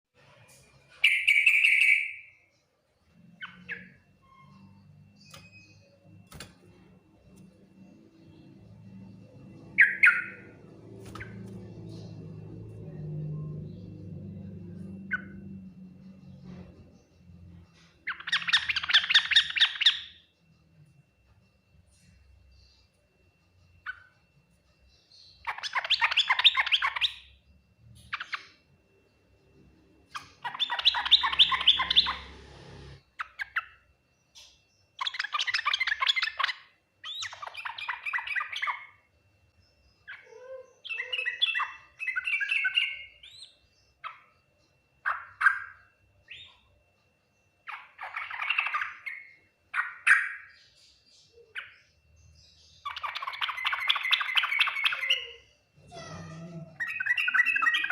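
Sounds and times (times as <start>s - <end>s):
bird singing rapid chattering phrases: 8.2s - 16.4s, 18.0s - 20.2s, 25.0s - 27.4s, 30.1s - 39.0s, 47.6s - 55.5s, 56.7s - 57.9s.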